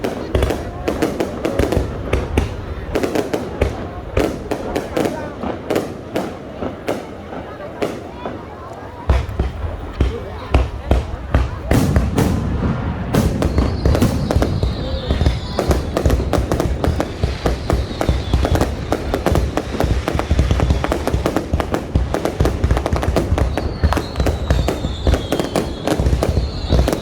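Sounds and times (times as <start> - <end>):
fireworks bangs and crackles: 0.0 - 27.0
faint falling whistles: 13.3 - 16.0, 17.0 - 18.8, 23.4 - 27.0.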